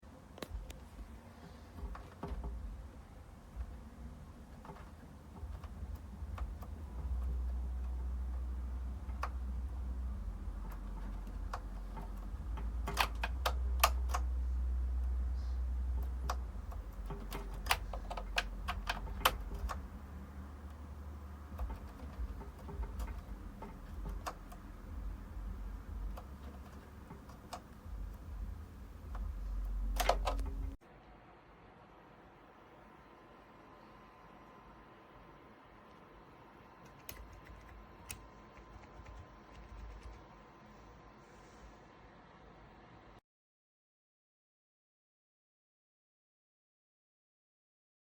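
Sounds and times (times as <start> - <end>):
low steady hum: 0.0 - 43.2
keyboard key clicks: 16.0 - 20.0, 29.1 - 30.8, 36.8 - 40.2.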